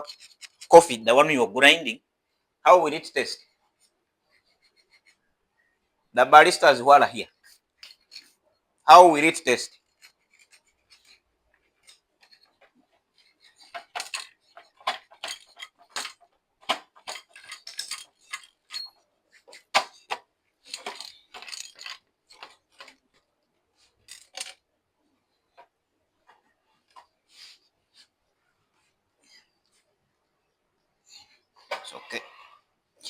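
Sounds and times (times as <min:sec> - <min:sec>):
metal parts clicking and clinking: 0:00.0 - 0:00.8, 0:09.8 - 0:11.2, 0:11.8 - 0:23.0, 0:24.0 - 0:24.6.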